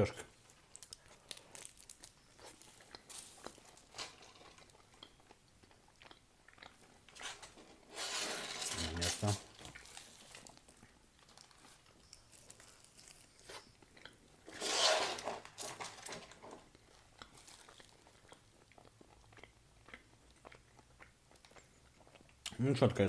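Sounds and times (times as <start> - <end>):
wet crackles and clicks: 0.4 - 7.8
person biting and chewing food: 0.4 - 22.6.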